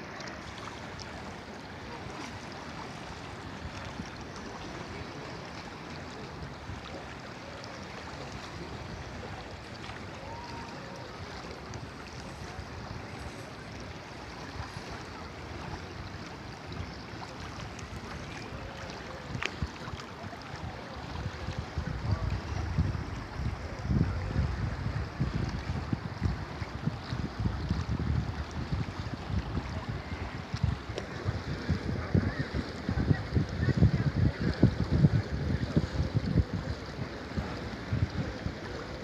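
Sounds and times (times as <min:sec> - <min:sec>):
river water rushing: 0:00.0 - 0:33.6
wind buffeting microphone: 0:08.5 - 0:39.0.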